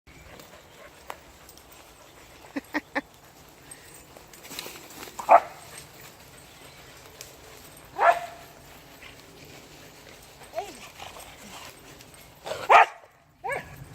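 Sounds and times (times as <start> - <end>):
dogs barking: 5.2 - 6.4, 7.6 - 8.7, 12.4 - 13.8.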